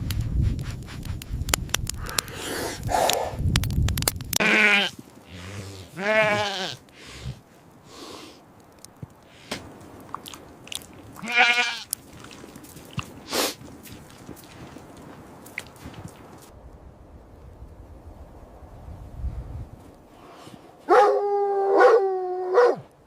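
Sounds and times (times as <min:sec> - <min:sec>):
sheep bleating: 0:04.4 - 0:06.8, 0:11.2 - 0:11.9
soft crunches: 0:04.4 - 0:16.5.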